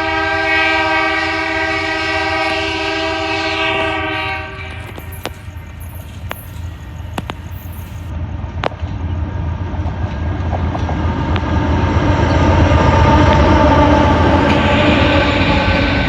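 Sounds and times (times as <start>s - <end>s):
train rumbling: 0.0s - 16.0s
sharp clicks: 3.9s - 8.1s.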